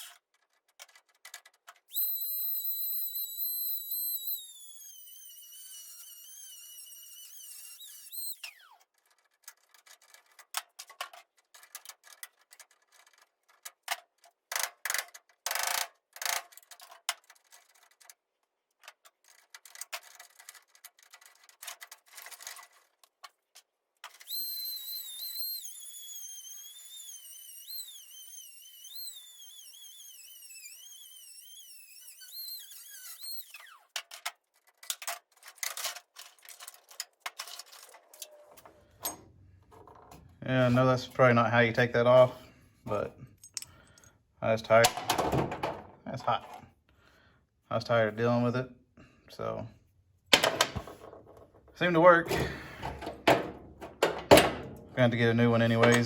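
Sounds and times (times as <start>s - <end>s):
power tool whine: 1.9s - 8.8s, 24.2s - 34.0s.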